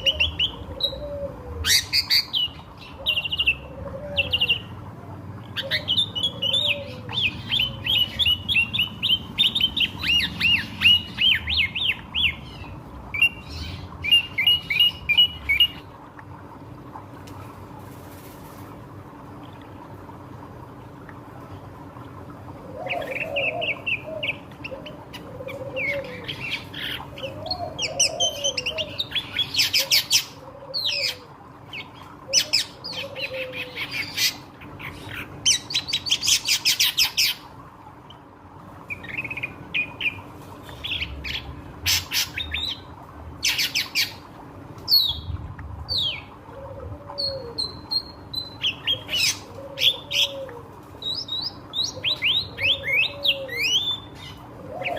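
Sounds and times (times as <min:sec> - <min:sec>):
faint steady hum: 0:00.0 - 0:54.9
bird singing chattering song: 0:05.6 - 0:15.8.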